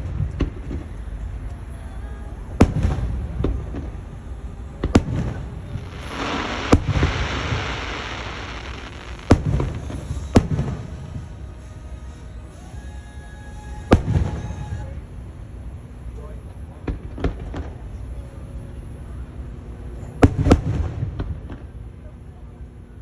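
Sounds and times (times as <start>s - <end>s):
fireworks bangs: 4.8s - 11.3s
fireworks crackling: 4.8s - 11.4s
rumbling echo: 5.0s - 10.9s.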